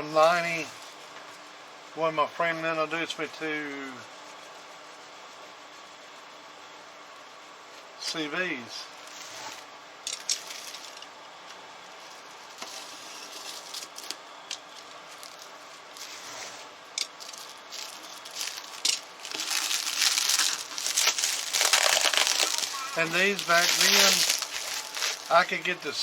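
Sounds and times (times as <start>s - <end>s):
packaging crinkling and rustling: 10.1s - 11.1s, 12.0s - 16.2s, 17.0s - 25.7s.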